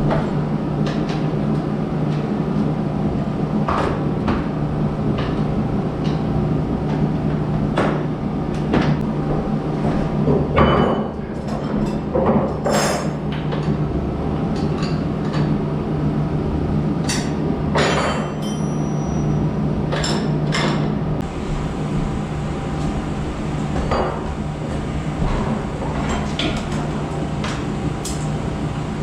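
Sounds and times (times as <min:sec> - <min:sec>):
low hum: 0:21.2 - 0:29.0.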